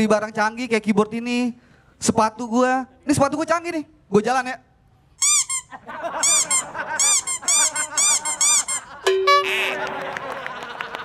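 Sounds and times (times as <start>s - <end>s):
cartoon squeaky shoe footsteps: 5.2s - 9.6s
steady held tone: 6.3s - 9.8s.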